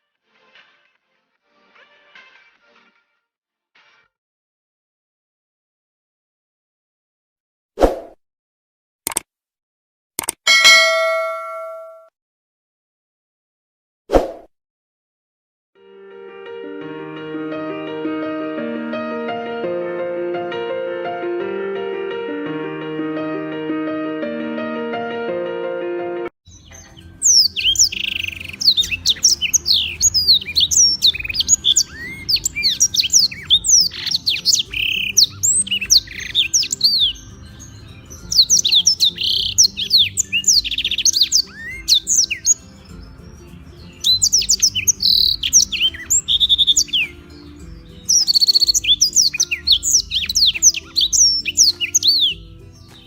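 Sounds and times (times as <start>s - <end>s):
canary singing fast trills: 26.5s - 53.0s.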